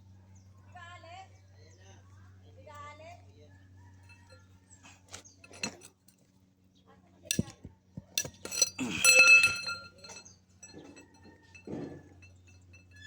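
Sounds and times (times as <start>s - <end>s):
metal tools clinking: 5.4s - 6.1s, 7.3s - 13.0s
steady low hum: 7.3s - 13.0s.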